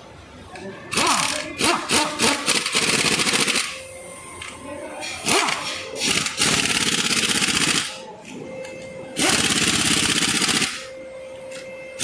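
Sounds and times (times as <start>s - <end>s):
pneumatic impact wrench: 0.9s - 3.8s, 5.2s - 8.0s, 9.2s - 10.9s.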